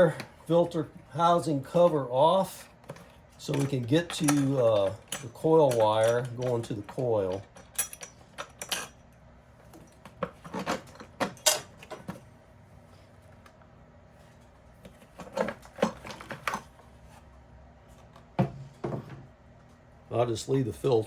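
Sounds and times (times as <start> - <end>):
clatter of parts: 2.8 - 9.1, 9.7 - 12.3, 14.9 - 16.8.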